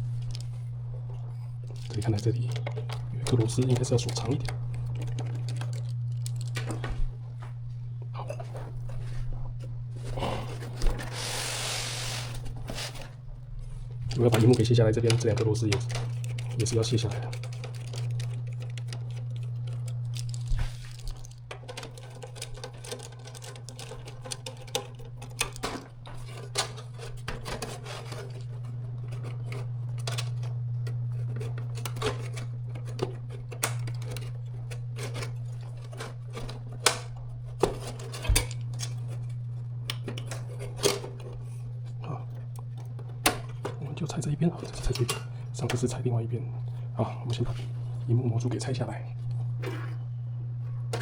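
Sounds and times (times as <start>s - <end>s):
steady low hum: 0.0s - 51.0s
screwdriver clicking on metal: 14.1s - 27.1s.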